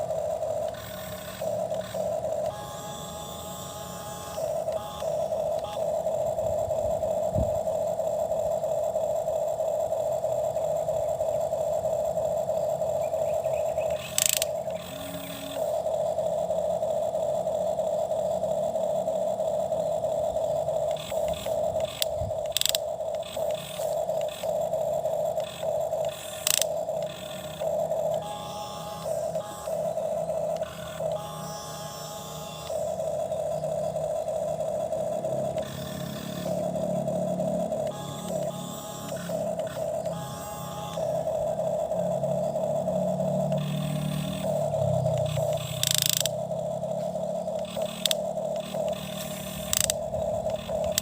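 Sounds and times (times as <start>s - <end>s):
toy electric motor whining: 0.0s - 51.0s
sharp clicks: 0.6s - 3.0s, 13.0s - 15.6s, 20.8s - 24.7s, 25.3s - 31.5s, 32.2s - 41.6s, 42.5s - 51.0s.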